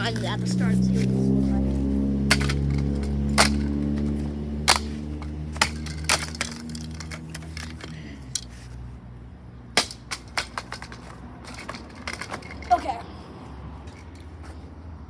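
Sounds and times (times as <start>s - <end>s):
low hum: 0.0s - 9.7s
broken plastic pieces clicking: 2.3s - 4.1s, 5.6s - 8.5s.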